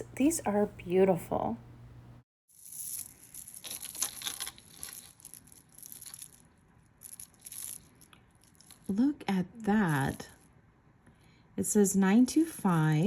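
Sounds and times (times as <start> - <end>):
packaging crinkling: 3.2 - 8.9.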